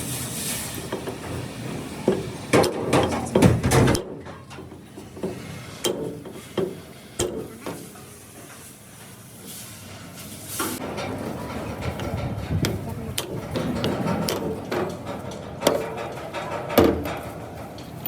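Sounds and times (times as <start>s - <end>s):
tools knocking and clattering: 2.1s - 7.8s, 10.8s - 18.0s.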